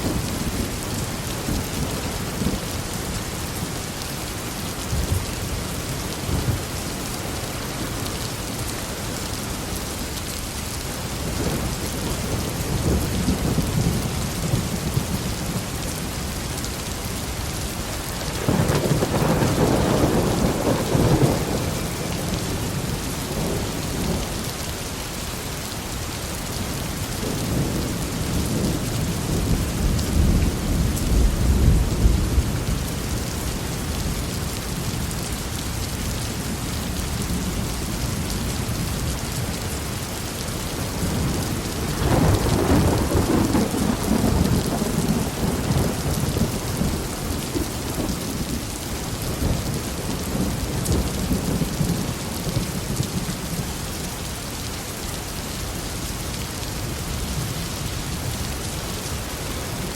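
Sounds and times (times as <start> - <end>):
heavy rain pouring: 0.0 - 59.9
thunder rumbling: 18.2 - 24.2, 40.8 - 53.6.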